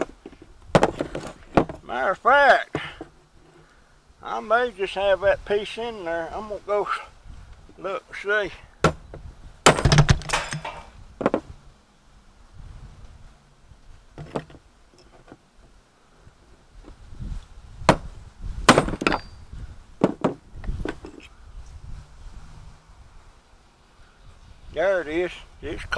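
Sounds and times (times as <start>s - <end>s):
scrap objects knocking and clattering: 0.0s - 1.8s.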